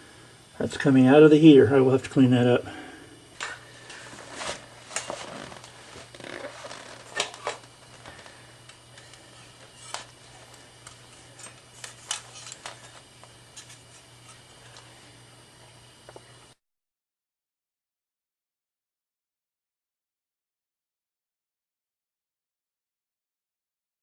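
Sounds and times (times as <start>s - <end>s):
steady low hum: 0.0s - 16.6s
hands handling small parts: 9.0s - 14.9s.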